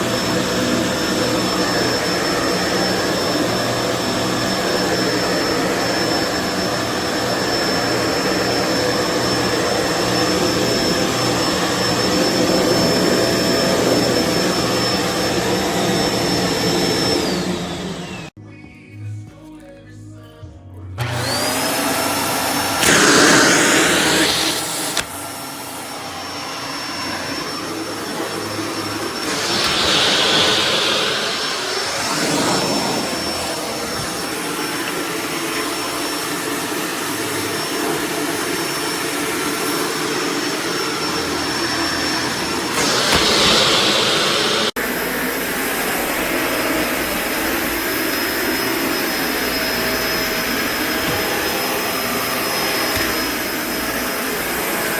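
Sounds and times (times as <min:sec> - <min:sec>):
upright vacuum running: 0:00.0 - 0:18.4, 0:21.0 - 0:54.9.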